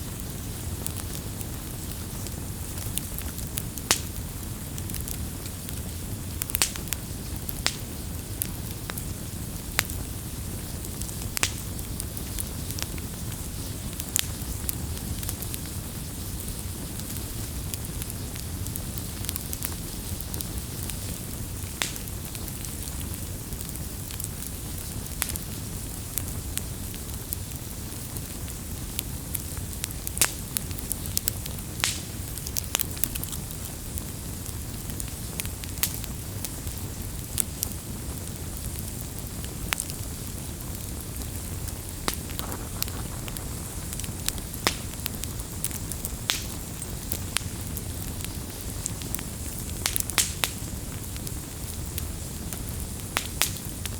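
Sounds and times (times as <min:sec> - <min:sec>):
low rumble of flames: 0:00.0 - 0:53.9
wood crackling and popping: 0:00.0 - 0:53.9.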